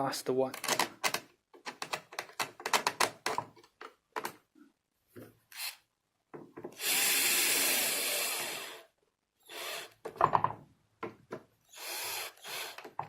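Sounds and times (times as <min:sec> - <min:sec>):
electric screwdriver running: 0:11.8 - 0:12.8.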